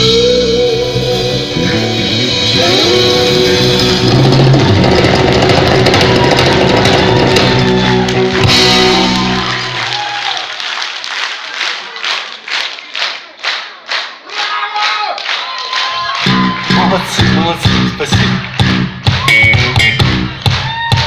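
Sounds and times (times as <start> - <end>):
live band playing: 0.0 - 10.1, 16.2 - 21.0
electric guitar: 0.0 - 10.2.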